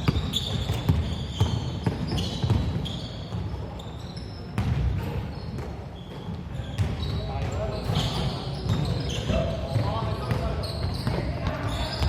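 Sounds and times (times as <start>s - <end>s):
basketball bouncing on hardwood: 0.0s - 3.5s
sneakers squeaking on floor: 0.0s - 12.0s.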